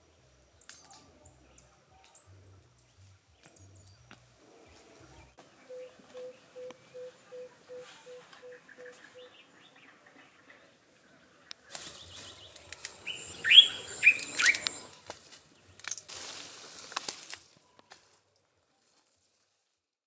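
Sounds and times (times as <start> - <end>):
birds calling: 11.7 - 15.8.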